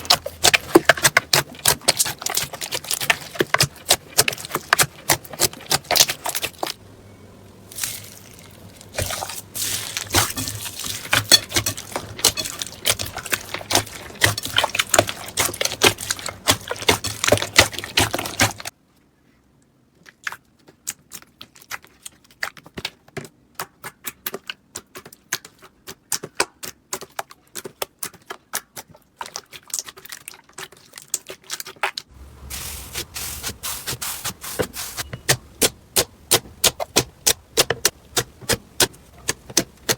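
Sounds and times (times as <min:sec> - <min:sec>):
slime clicking and crackling: 0:00.0 - 0:06.8, 0:07.8 - 0:18.7.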